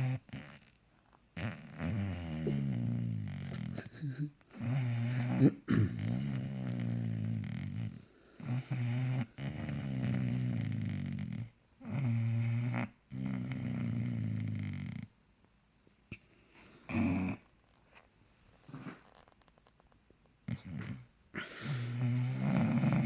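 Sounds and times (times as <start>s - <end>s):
dog snoring: 0.0s - 15.1s, 16.8s - 17.5s, 20.4s - 23.0s.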